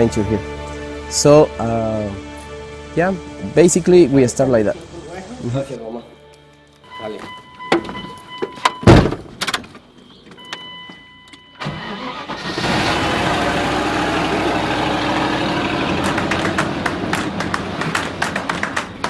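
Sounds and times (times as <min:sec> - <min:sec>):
vehicle engine starting and running: 0:11.6 - 0:19.0.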